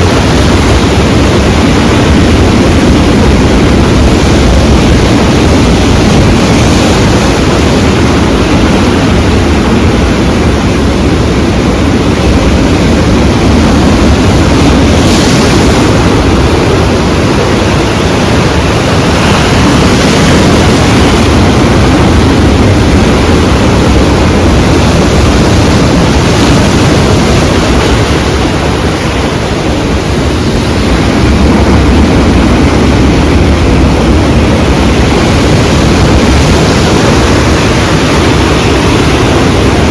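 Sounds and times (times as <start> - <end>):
sea waves breaking: 0.0 - 39.9.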